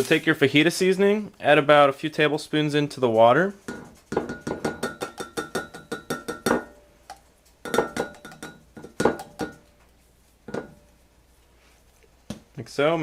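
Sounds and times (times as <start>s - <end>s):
spoon clinking against glass cup: 3.7s - 6.8s, 7.6s - 9.7s.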